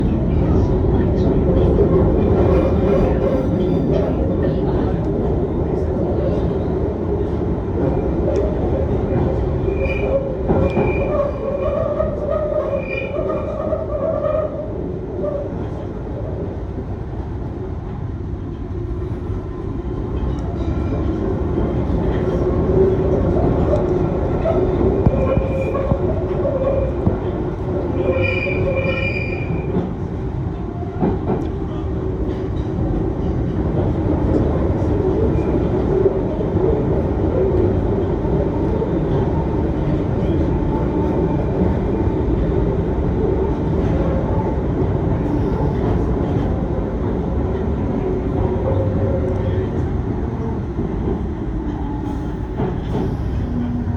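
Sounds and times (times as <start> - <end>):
underground train rumbling in tunnel: 0.0 - 53.9
high-pitched wheel squeal: 28.1 - 29.7.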